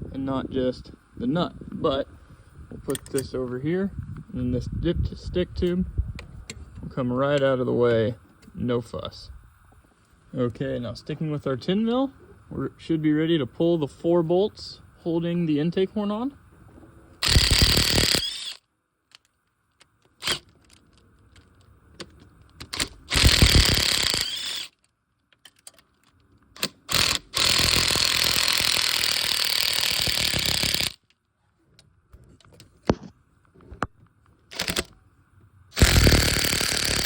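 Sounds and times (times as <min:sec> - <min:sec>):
sharp metallic clicks: 0:02.9 - 0:03.4, 0:17.2 - 0:31.2, 0:34.5 - 0:35.0, 0:35.8 - 0:37.0
power tool spinning bolts: 0:17.2 - 0:19.2, 0:20.1 - 0:20.8, 0:22.6 - 0:24.8, 0:26.6 - 0:31.0, 0:34.5 - 0:35.0, 0:35.7 - 0:37.0.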